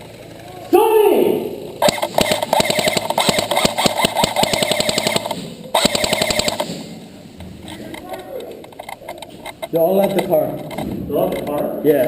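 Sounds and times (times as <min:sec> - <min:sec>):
airsoft gun firing full auto: 0:01.8 - 0:07.1.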